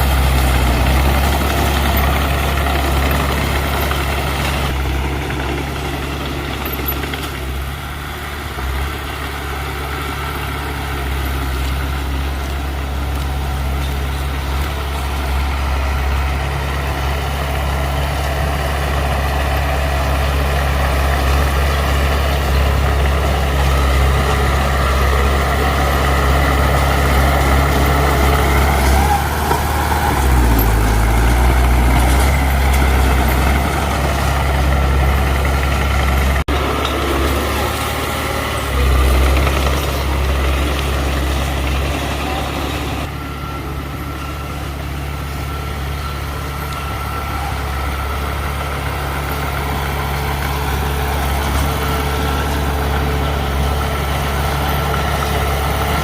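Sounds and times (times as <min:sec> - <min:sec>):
heavy diesel engine droning: 0:00.0 - 0:56.0.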